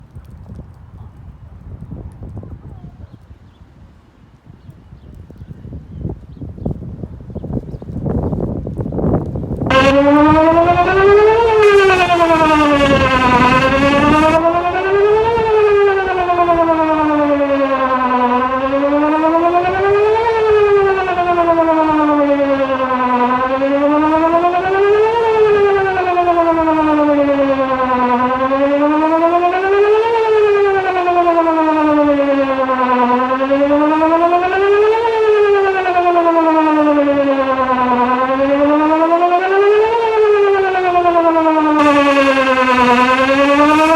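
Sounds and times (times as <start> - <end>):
wind buffeting microphone: 0.0 - 27.5
warning siren wailing: 9.6 - 43.9.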